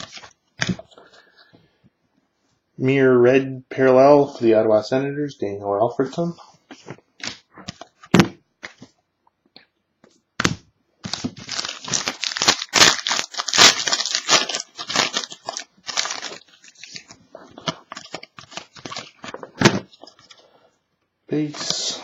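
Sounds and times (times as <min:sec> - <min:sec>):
wrapper ripping: 0:10.4 - 0:20.4
wrapper crinkling: 0:11.0 - 0:20.4.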